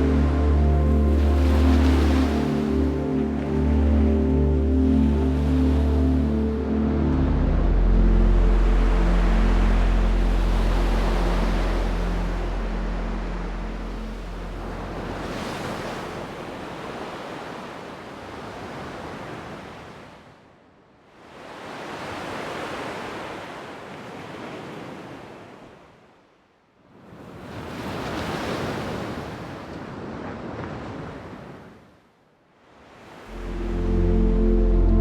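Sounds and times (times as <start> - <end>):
ocean waves washing in: 0.0 - 20.1, 32.7 - 35.0.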